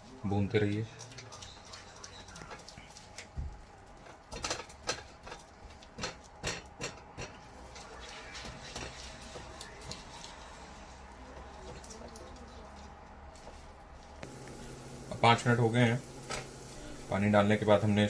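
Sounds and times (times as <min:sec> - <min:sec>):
spatula scraping and knocking pan: 0:04.1 - 0:11.8.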